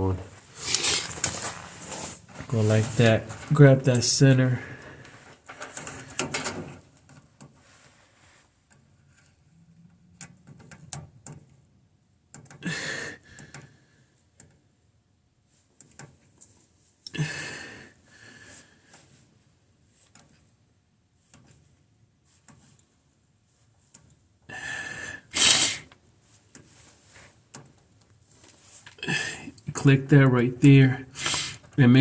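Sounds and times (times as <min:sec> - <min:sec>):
rustling: 0:00.3 - 0:03.6.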